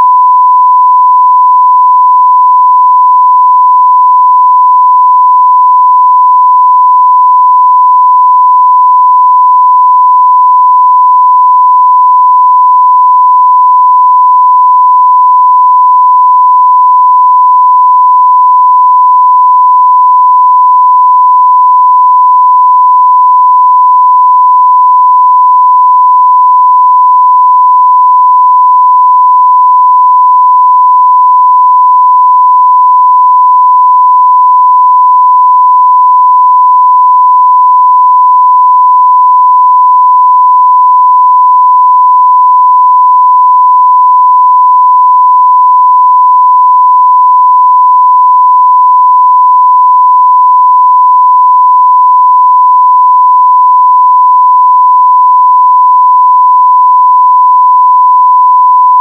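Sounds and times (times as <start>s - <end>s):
sine wave test tone: 0.0s - 59.0s.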